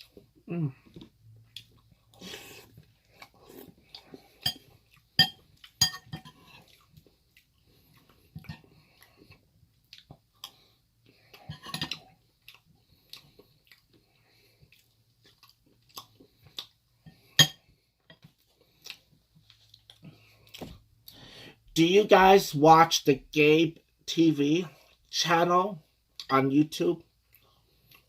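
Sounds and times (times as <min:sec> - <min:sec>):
chewing food: 0:00.0 - 0:17.4, 0:18.1 - 0:21.2, 0:27.1 - 0:28.0.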